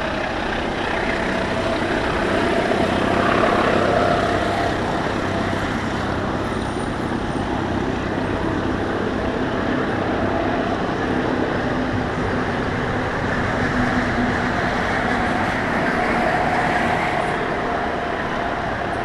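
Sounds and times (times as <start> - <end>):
train wheels rumbling on rail: 0.0 - 19.0.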